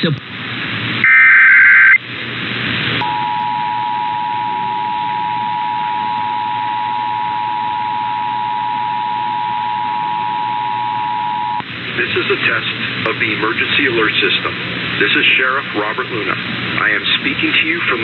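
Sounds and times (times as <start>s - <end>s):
screechy digital data burst: 1.0s - 2.0s
two-tone alarm signal: 1.0s - 2.0s, 3.0s - 11.6s
steady hiss: 11.6s - 18.0s.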